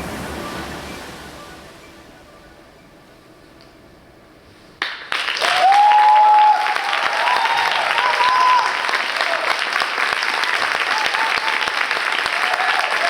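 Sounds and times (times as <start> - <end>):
audience applause: 4.8 - 13.0
cheers or whistles: 5.4 - 9.8, 10.6 - 13.0.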